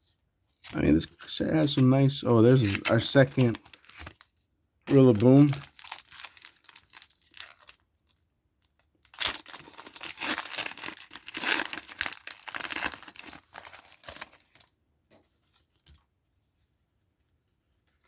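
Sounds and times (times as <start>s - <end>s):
foil wrapper crinkling and tearing: 2.5s - 4.3s, 4.9s - 14.7s.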